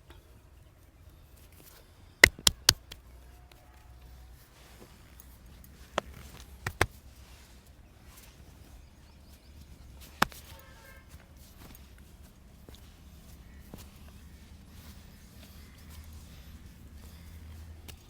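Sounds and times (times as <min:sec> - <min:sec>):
sharp neck cracks: 0:02.2 - 0:03.0, 0:05.9 - 0:07.0.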